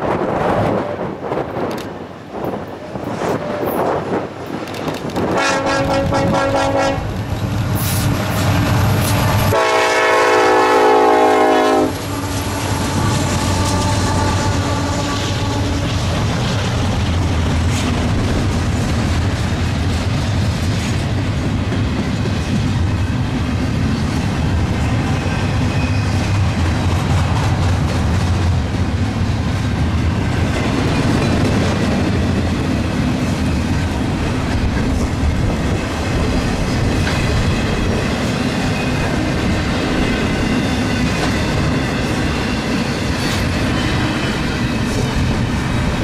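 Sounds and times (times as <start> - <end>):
wind buffeting microphone: 0.0 - 9.6, 11.8 - 46.0
train wheels clacking: 3.0 - 46.0
train air horn blasts: 5.3 - 7.2, 9.1 - 15.9.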